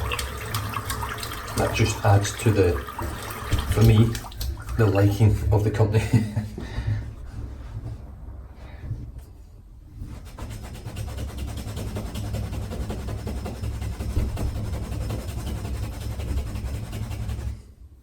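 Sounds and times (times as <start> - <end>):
tap water running into sink: 0.0 - 5.4.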